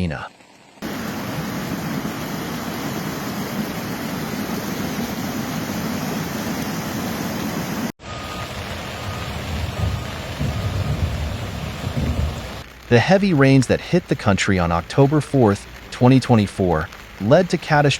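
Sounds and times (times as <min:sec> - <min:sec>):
steady rushing noise: 0:00.8 - 0:17.9
reversing alarm beeping: 0:08.0 - 0:12.3
rumbling vehicle: 0:08.0 - 0:13.0.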